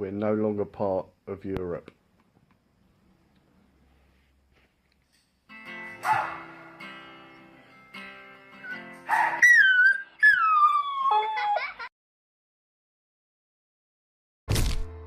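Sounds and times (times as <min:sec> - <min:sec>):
acoustic guitar strummed slowly: 0:05.5 - 0:09.2.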